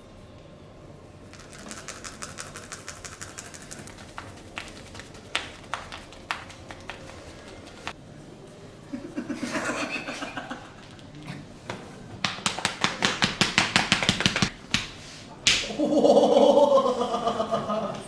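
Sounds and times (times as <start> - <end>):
rapid hand slaps: 1.7 - 8.0, 12.2 - 15.8.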